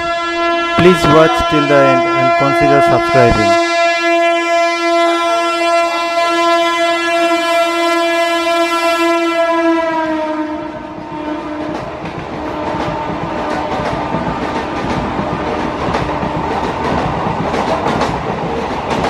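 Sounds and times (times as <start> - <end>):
electric train horn blast: 0.0 - 17.0
train wheels clickety-clack: 10.7 - 19.0.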